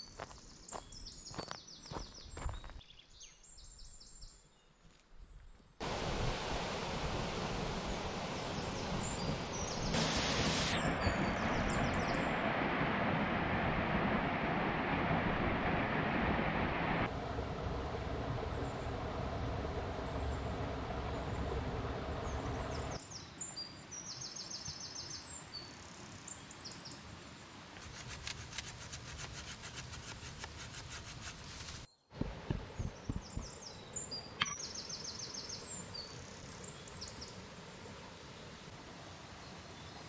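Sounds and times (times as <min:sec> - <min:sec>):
songbirds chirping: 0:00.0 - 0:05.8, 0:07.8 - 0:10.0, 0:31.9 - 0:40.0
low rumble: 0:05.9 - 0:23.0.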